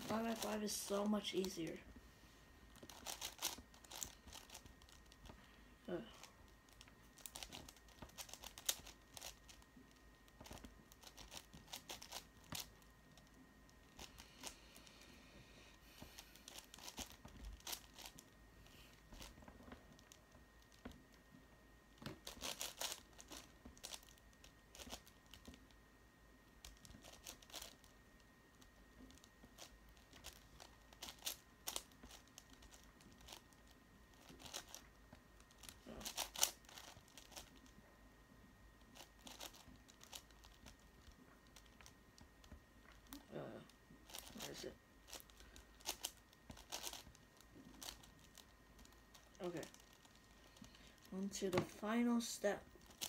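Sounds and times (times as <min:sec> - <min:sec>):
puzzle cube plastic clicking: 0:02.8 - 0:05.3, 0:06.8 - 0:14.6, 0:22.1 - 0:25.6, 0:35.5 - 0:37.7, 0:44.1 - 0:51.0.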